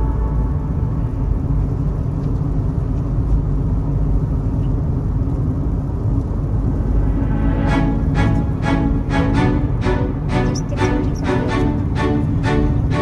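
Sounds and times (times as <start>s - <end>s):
car cabin road and engine rumble: 0.0s - 7.1s, 10.0s - 13.0s.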